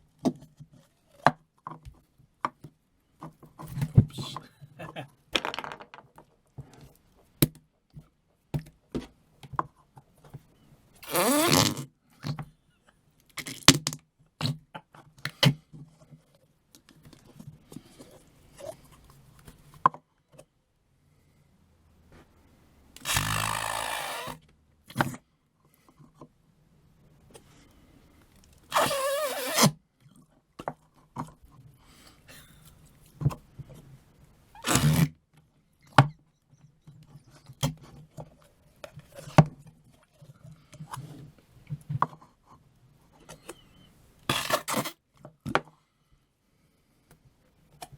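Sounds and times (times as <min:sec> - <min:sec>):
putty making fart-like noises: 0:11.0 - 0:11.9, 0:34.6 - 0:35.1.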